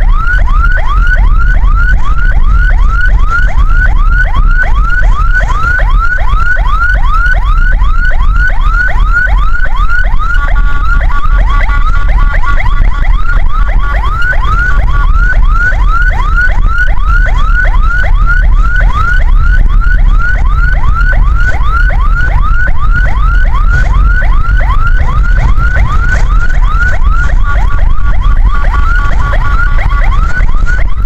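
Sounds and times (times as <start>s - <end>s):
ambulance siren yelping: 0.0s - 31.0s
loud low rumble: 16.5s - 31.0s.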